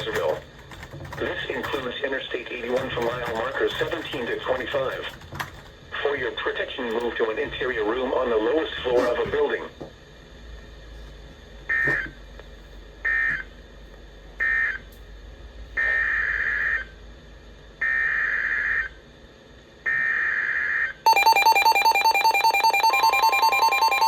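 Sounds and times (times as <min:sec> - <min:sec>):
two-tone attention signal: 0:21.1 - 0:24.0
warbling data bursts: 0:21.1 - 0:24.0.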